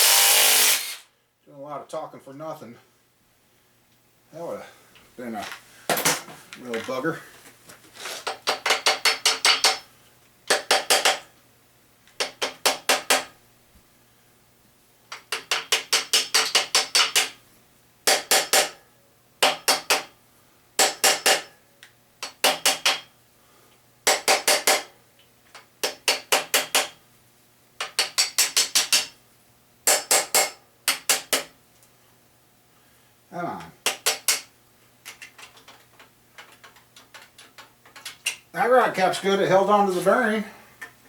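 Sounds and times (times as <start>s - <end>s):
hammer tapping on metal: 8.3s - 9.8s, 10.5s - 11.3s, 15.1s - 17.4s, 18.1s - 18.8s, 19.4s - 20.1s, 20.8s - 21.5s, 24.0s - 24.9s, 33.8s - 34.5s.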